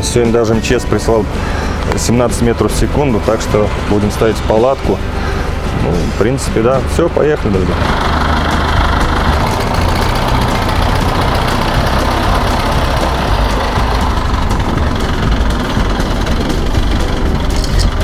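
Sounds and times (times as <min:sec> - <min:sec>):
strong wind buffeting microphone: 0:09.2 - 0:18.0.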